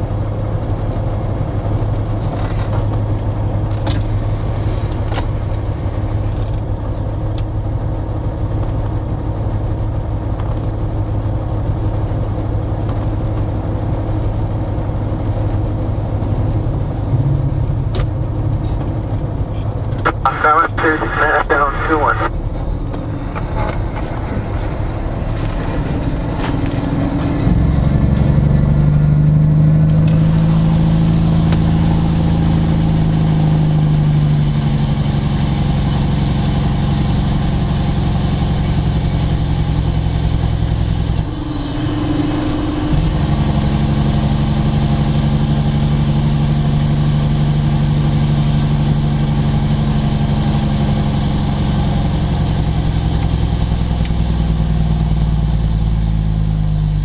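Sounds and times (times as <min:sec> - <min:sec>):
diesel truck engine under load: 0:00.0 - 0:57.0.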